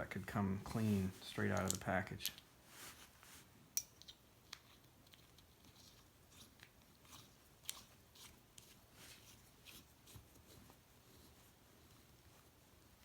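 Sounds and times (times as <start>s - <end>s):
small clicks and scrapes: 3.9s - 13.0s.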